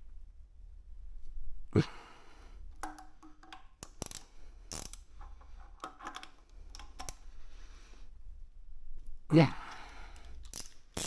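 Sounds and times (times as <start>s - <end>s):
metallic clicks from hand tools: 2.8s - 7.2s, 9.7s - 11.0s.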